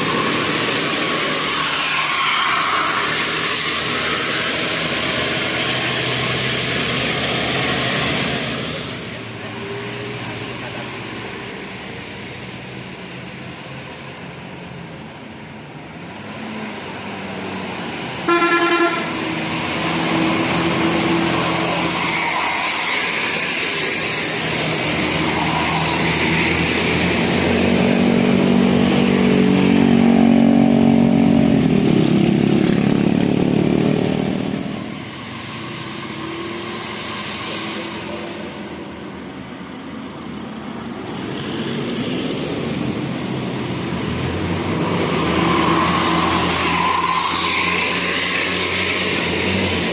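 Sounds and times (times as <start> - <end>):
large vehicle engine and tyres: 0.0 - 49.9
road traffic passing: 0.0 - 49.9
car horn blast: 18.2 - 19.2.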